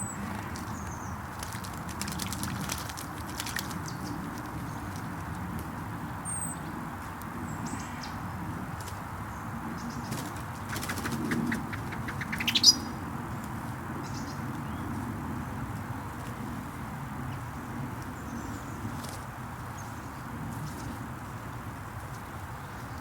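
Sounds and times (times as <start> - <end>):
wings flapping: 1.3 - 5.0, 10.1 - 12.6
high bird chirps: 11.5 - 12.9.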